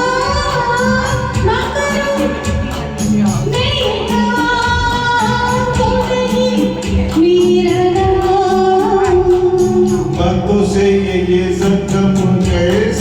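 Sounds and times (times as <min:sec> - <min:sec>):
singing long held notes: 0:00.0 - 0:13.0
song with steady beat: 0:00.0 - 0:13.0.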